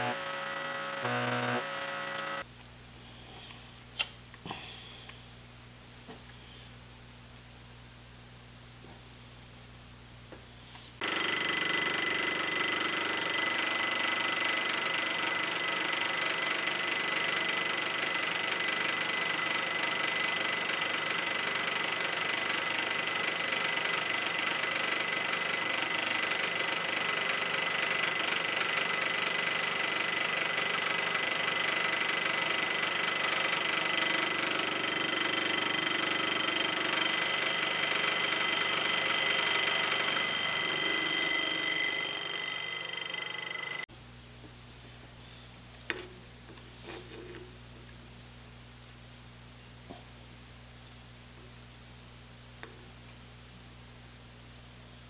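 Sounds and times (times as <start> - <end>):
higher whine: 0.0 - 2.4
air compressor whining: 0.0 - 2.5, 11.0 - 43.9.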